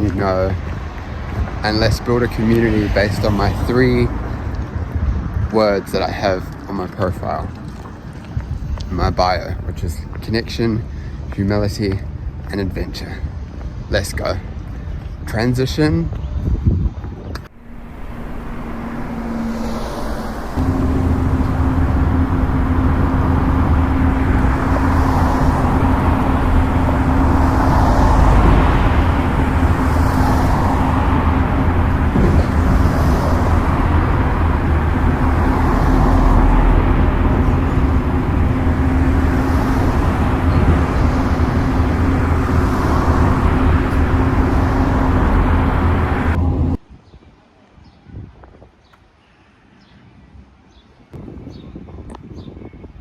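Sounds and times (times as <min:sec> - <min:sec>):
bus engine and road drone: 0:00.0 - 0:46.8
constant hum: 0:00.0 - 0:46.8.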